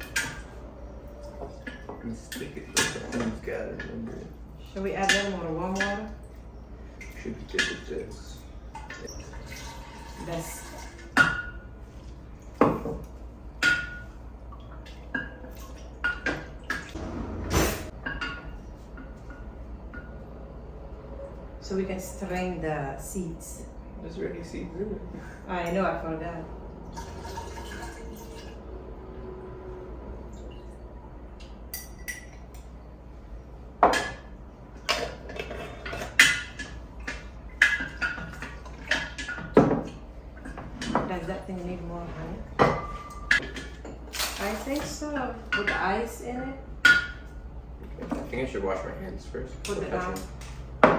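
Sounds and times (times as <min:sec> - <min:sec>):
dishes and utensils clinking: 0:00.0 - 0:04.2, 0:07.0 - 0:11.7, 0:12.5 - 0:20.2, 0:31.7 - 0:32.7, 0:33.8 - 0:41.4, 0:42.6 - 0:46.0.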